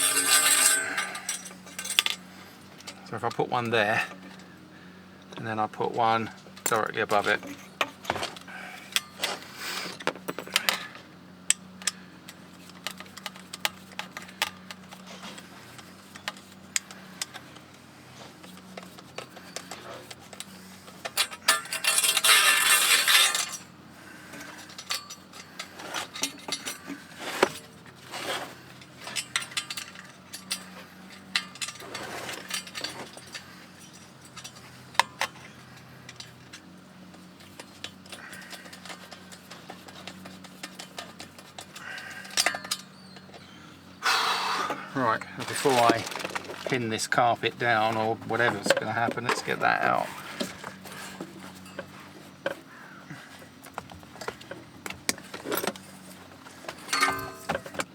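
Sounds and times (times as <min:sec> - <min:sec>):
loud metal scraping: 0:00.0 - 0:02.1, 0:21.2 - 0:23.7
metal clinks and clicks: 0:00.0 - 0:03.1, 0:28.7 - 0:43.5, 0:56.7 - 0:57.9.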